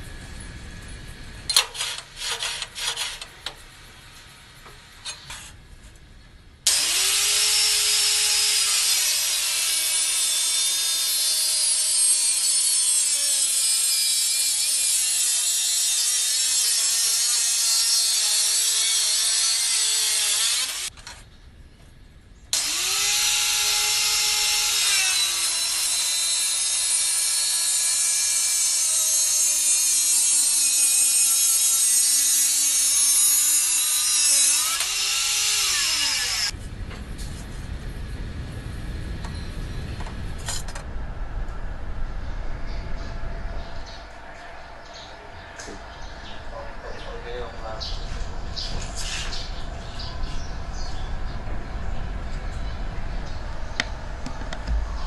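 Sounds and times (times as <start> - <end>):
angle grinder cutting metal: 1.5 - 3.3, 6.7 - 20.9, 22.6 - 36.6.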